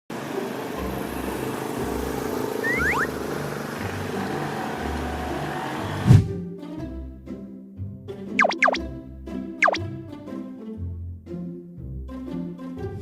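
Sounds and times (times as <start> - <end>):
traffic noise: 0.1 - 6.1
quick rising chirps: 2.6 - 3.1, 8.4 - 8.8.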